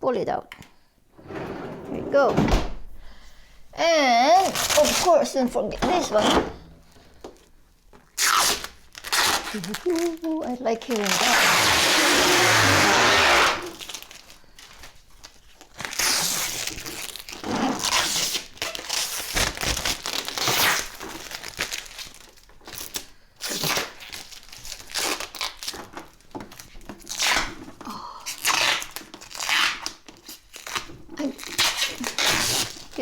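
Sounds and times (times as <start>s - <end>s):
plastic crinkling: 4.2s - 33.0s
plastic wrap peeling: 4.2s - 33.0s.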